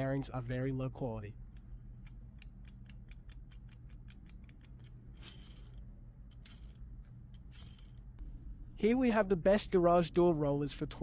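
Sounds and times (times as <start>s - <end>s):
roller bearings clicking: 2.8s - 8.1s.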